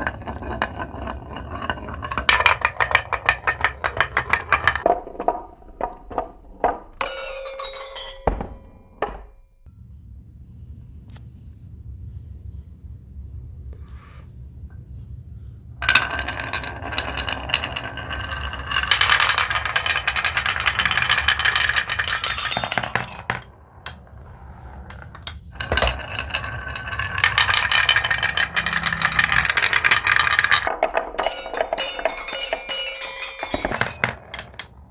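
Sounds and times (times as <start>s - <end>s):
marbles rattling down a track: 15.8s - 23.5s, 24.9s - 32.7s.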